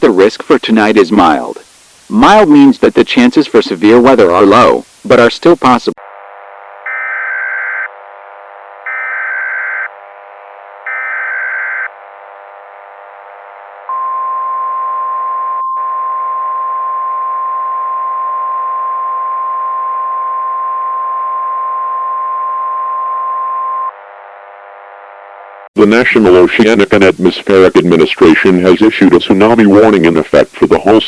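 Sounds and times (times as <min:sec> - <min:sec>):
buzzy digital data bursts: 0:03.5 - 0:14.0
steady alarm tone: 0:06.0 - 0:24.1.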